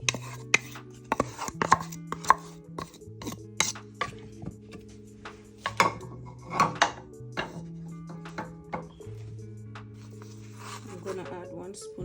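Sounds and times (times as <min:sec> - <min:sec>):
utensils knocking against bowls: 0:00.0 - 0:04.2, 0:05.6 - 0:08.9.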